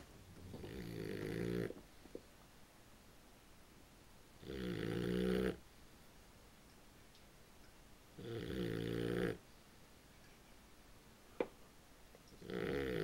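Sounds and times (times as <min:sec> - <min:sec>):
puppy snoring: 0:00.4 - 0:01.8, 0:04.4 - 0:05.6, 0:08.2 - 0:09.4, 0:12.4 - 0:13.0.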